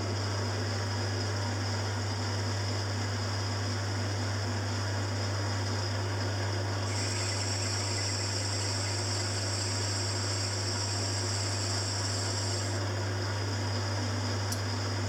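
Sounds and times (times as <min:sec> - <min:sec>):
high cutting hiss: 0:06.9 - 0:12.8
lathe motor hum: 0:06.9 - 0:12.8.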